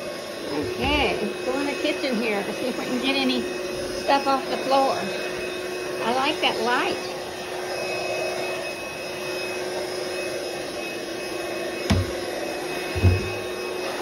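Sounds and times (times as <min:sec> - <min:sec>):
vacuum cleaner running: 0:00.0 - 0:14.0
dull thumps: 0:11.9 - 0:12.2, 0:12.9 - 0:13.5.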